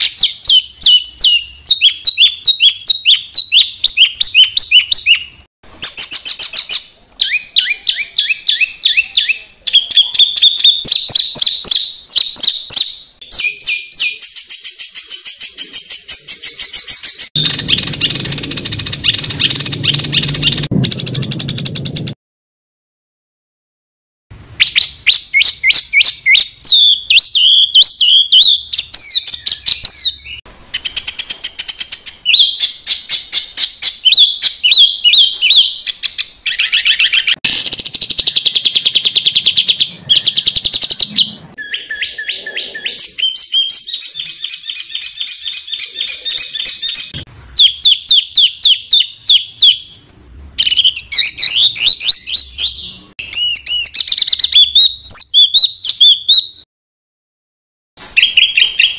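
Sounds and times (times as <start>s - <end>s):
songbird chirps and trills: 0.0s - 22.2s.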